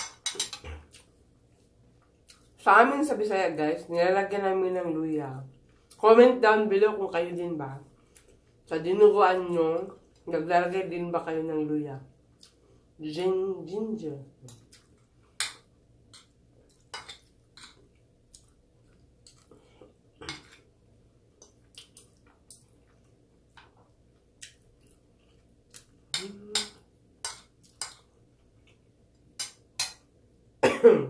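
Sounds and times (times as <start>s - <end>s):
cutlery clinking on a plate: 0.0s - 0.8s.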